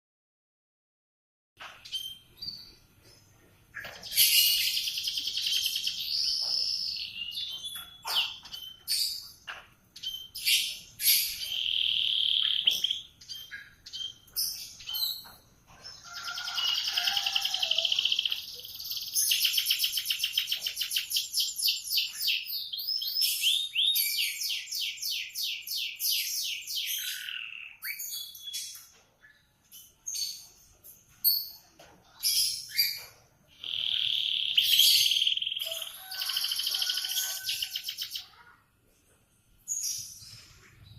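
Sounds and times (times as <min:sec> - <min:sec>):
canary singing: 0:01.6 - 0:02.8, 0:03.8 - 0:30.6, 0:32.2 - 0:38.4.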